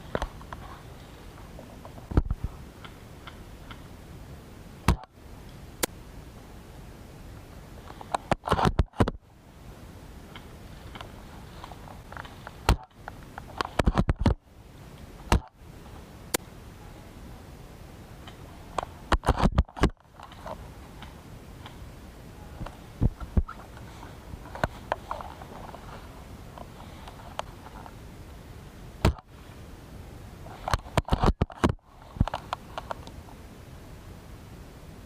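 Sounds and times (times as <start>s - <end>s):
steady low hiss: 0.0s - 35.0s
airsoft rifle clicks and knocks: 30.6s - 33.1s.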